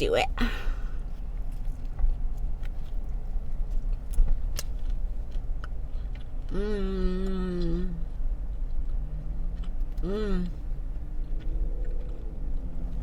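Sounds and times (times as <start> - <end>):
low rumble: 0.2 - 13.0
person chewing a sandwich: 0.7 - 13.0
person humming mmm: 6.5 - 8.1, 10.0 - 10.7.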